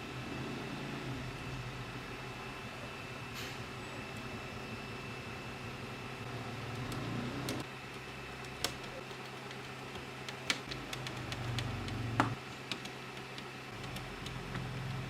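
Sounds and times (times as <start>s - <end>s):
keyboard plastic clicks and taps: 6.8s - 15.0s.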